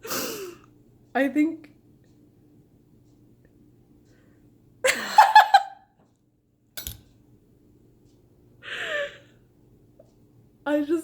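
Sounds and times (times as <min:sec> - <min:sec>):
woman laughing: 0:04.8 - 0:05.9
sharp click: 0:06.8 - 0:07.1.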